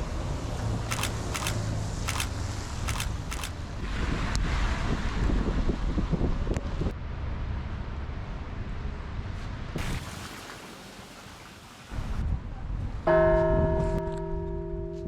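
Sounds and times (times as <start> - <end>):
deep bell strike: 13.1 - 15.0.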